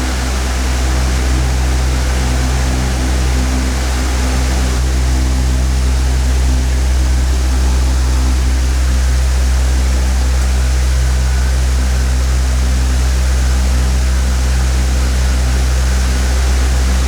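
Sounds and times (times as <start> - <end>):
electric fan running: 0.0 - 17.0.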